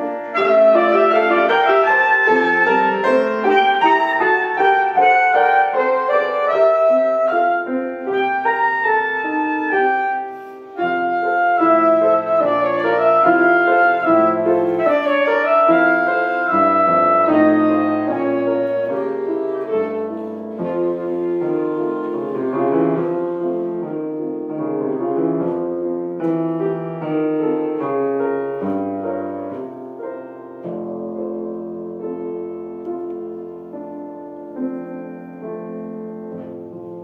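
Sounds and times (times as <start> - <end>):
wind instrument slow melody: 0.0 - 23.6
piano accompaniment: 0.0 - 37.0.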